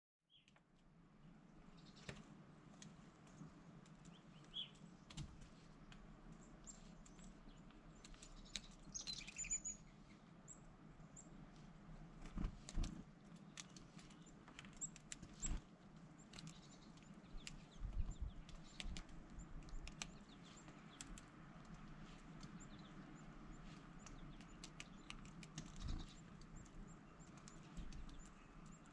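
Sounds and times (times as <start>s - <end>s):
low steady background noise: 0.4s - 28.9s
high bird chirps: 8.3s - 9.9s
bird wings fluttering and tapping: 12.2s - 22.6s, 23.7s - 28.9s.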